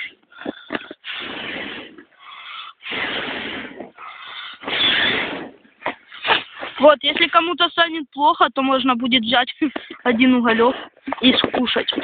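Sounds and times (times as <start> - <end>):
person blowing breathy puffs: 0.0 - 6.8.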